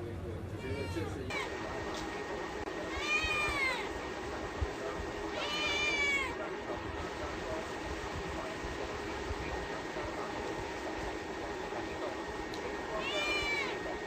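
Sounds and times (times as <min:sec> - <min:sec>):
cat meowing: 0:00.6 - 0:01.5, 0:02.9 - 0:03.9, 0:05.3 - 0:06.4, 0:13.0 - 0:13.8.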